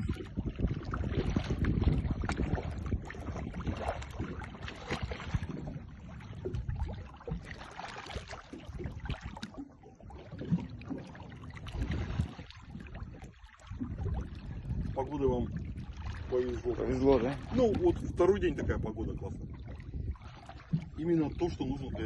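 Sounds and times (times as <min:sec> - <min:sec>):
water splashing around a boat: 0:00.0 - 0:22.0.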